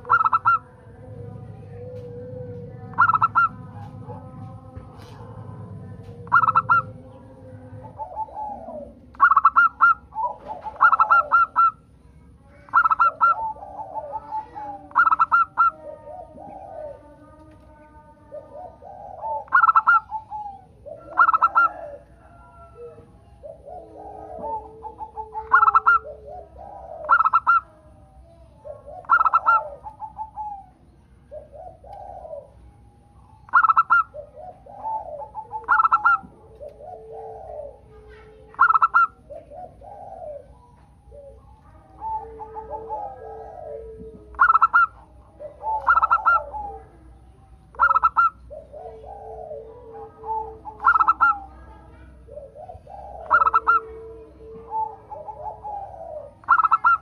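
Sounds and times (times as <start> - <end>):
doves cooing: 0.0 - 57.0.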